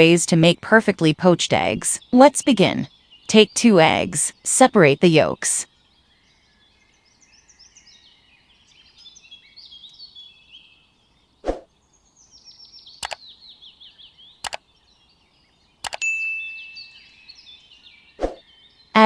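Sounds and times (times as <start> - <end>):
birds chirping in trills: 0.0 - 19.0.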